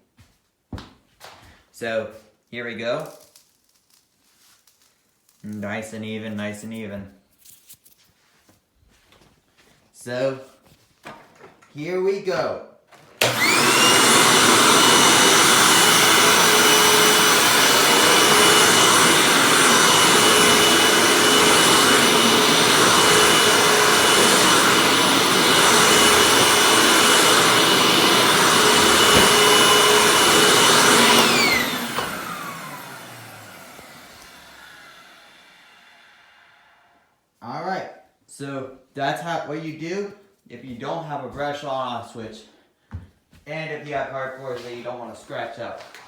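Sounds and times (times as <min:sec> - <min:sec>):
vacuum cleaner motor whining: 0:13.1 - 0:36.9.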